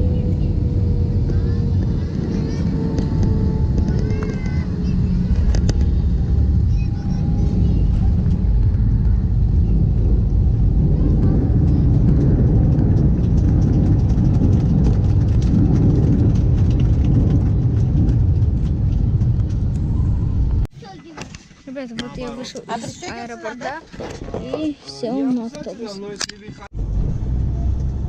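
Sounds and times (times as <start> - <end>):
airliner cabin rumble: 0.0 - 20.7.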